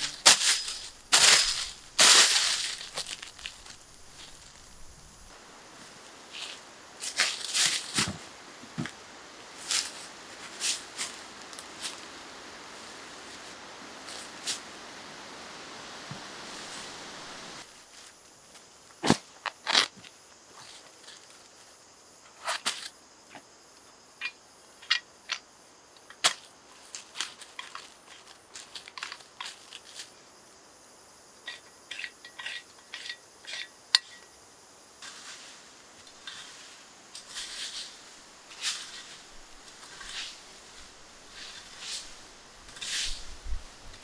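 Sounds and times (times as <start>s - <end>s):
soft crunching and rustling: 0.0s - 9.0s, 35.0s - 44.0s.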